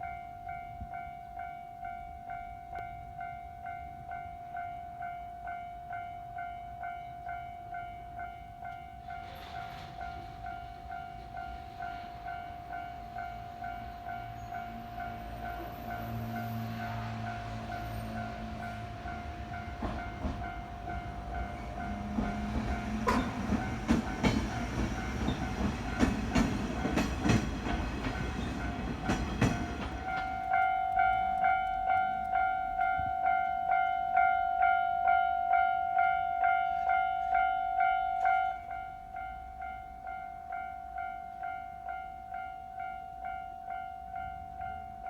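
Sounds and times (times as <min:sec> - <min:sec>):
crossing warning bell ringing: 0:00.0 - 0:45.0
train wheels clattering over rail joints: 0:09.1 - 0:12.5, 0:19.4 - 0:30.6.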